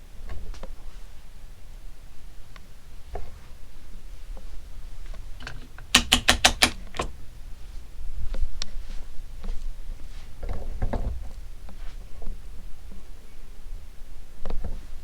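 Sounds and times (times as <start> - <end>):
switch clicks: 5.4 - 7.1.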